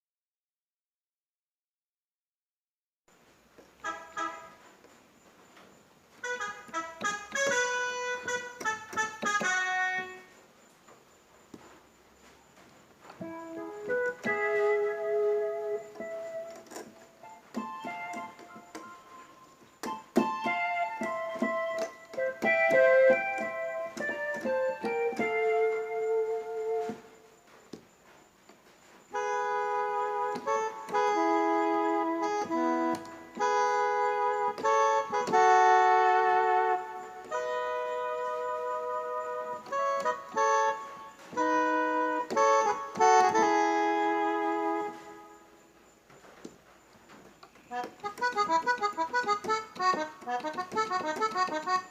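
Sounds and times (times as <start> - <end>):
keyboard accompaniment strokes: 3.8 - 4.7, 6.2 - 10.4, 13.2 - 27.6, 29.1 - 45.8, 47.7 - 51.9
keyboard piano melody: 3.8 - 4.7, 6.2 - 10.4, 13.1 - 27.6, 29.1 - 46.1, 46.9 - 51.9
keyboard accordion voice: 47.7 - 51.9.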